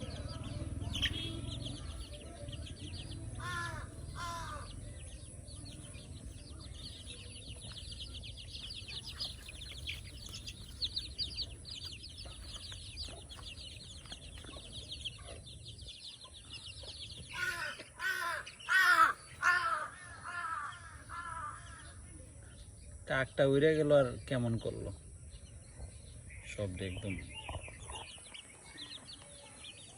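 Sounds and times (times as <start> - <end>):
fast high chatter: 0.0 - 12.7
crow cawing: 3.4 - 4.8, 17.3 - 22.1.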